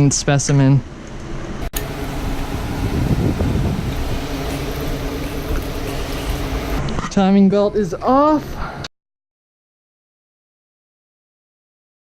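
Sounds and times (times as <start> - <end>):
steady mechanical hum: 0.9 - 6.9
dense rushing noise: 1.9 - 6.8.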